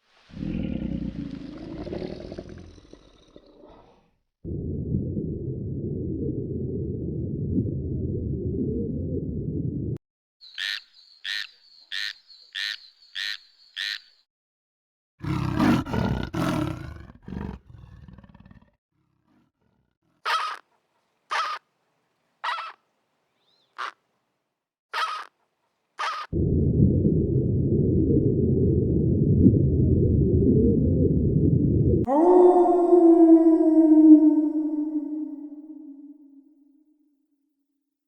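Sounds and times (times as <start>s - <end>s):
animal roar: 0.3s - 4.1s, 15.2s - 19.9s, 32.0s - 36.5s
short animal calls: 20.2s - 20.7s, 21.3s - 21.6s, 22.4s - 22.8s, 24.9s - 25.4s, 26.0s - 26.3s
sharp animal calls: 20.2s - 21.6s, 22.4s - 22.8s, 23.6s - 24.0s, 24.9s - 25.4s, 26.0s - 26.4s.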